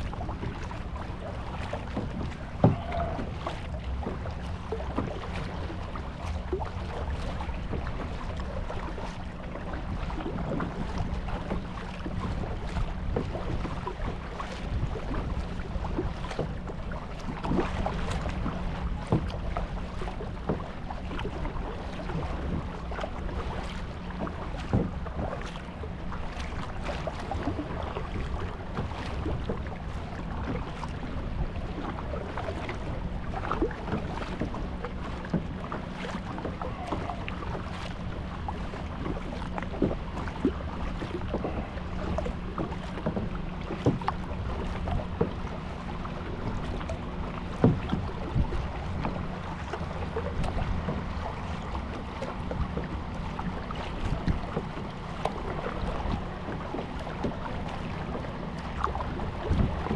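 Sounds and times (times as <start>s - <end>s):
water splashing around kayak: 0.0s - 59.9s
wind rumble on microphone: 0.0s - 59.9s.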